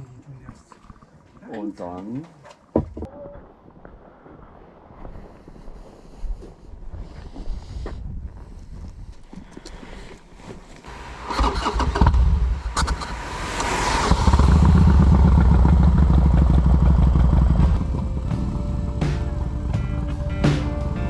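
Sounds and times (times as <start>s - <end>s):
motorcycle engine starting and rumbling: 10.9s - 21.0s.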